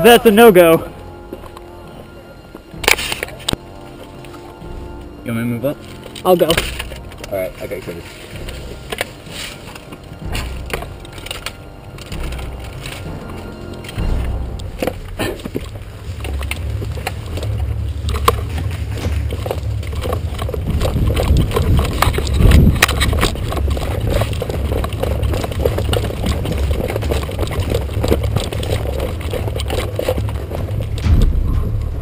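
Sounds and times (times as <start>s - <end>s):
wind rumble: 0.0s - 32.0s
footfalls and gear knocks: 30.7s - 32.0s.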